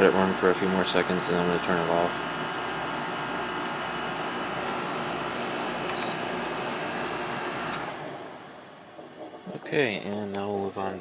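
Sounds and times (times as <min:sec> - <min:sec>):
air conditioner humming: 0:00.0 - 0:11.0
short high beep: 0:06.0 - 0:06.2.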